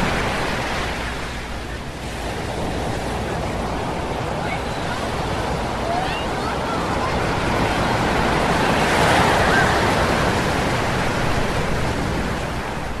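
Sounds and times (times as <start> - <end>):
ocean surf crashing: 0.0 - 13.0.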